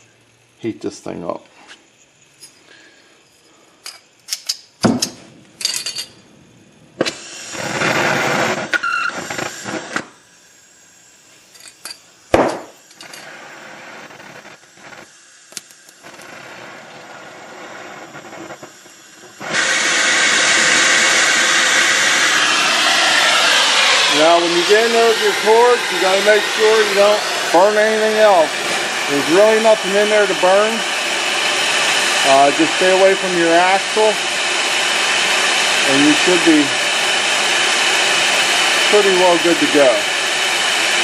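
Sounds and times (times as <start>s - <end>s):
torch flame hissing: 0.0s - 41.0s
tools and metal parts clacking: 3.8s - 6.2s.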